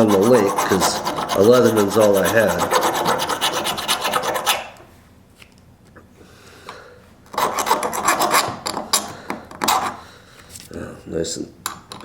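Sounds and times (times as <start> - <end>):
file rasping on metal blade: 0.0 - 4.8, 7.4 - 8.5.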